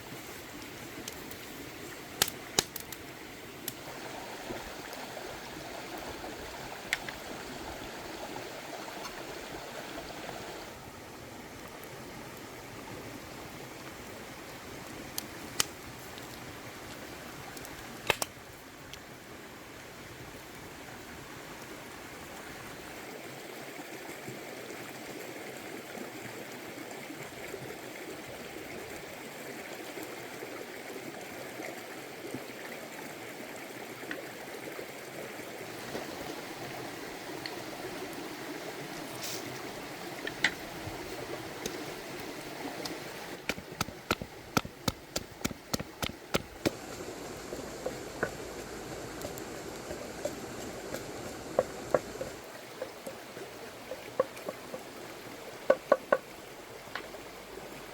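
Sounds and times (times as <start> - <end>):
water running: 38.9 - 56.3
sharp taps: 43.5 - 46.8.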